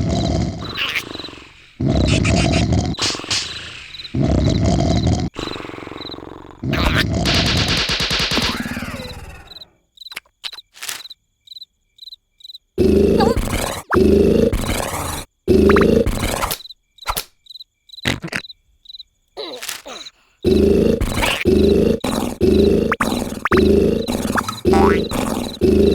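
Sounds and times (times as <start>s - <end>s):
cartoon snoring: 0.0s - 7.8s, 8.4s - 9.7s, 12.8s - 16.6s, 19.4s - 25.9s
cricket-like chirps: 0.0s - 25.9s.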